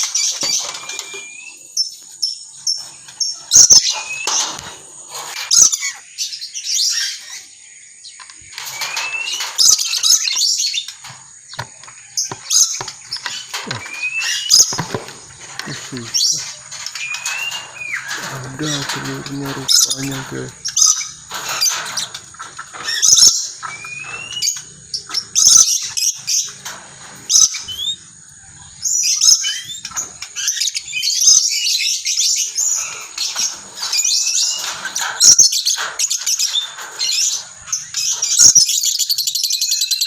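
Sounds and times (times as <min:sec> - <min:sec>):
birds calling harshly: 0:00.0 - 0:40.0.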